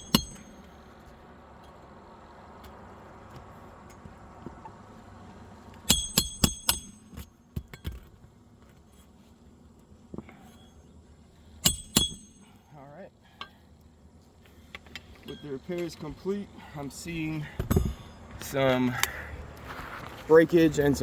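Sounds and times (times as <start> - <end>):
hammer striking metal: 0.0 - 0.7, 5.9 - 7.9, 11.6 - 12.6.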